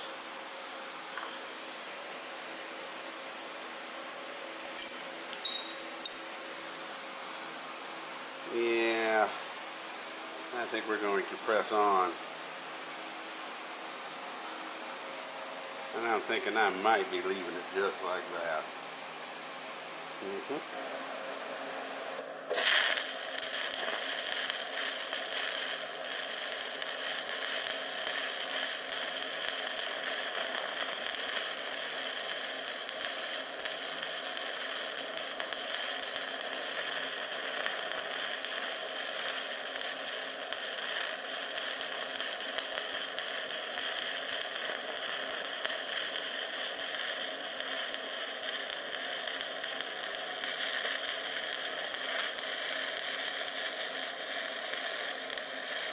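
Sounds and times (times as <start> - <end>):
arc welding crackling hiss: 0.0 - 0.3, 8.4 - 9.4, 10.5 - 12.2, 15.9 - 18.7, 22.5 - 55.9.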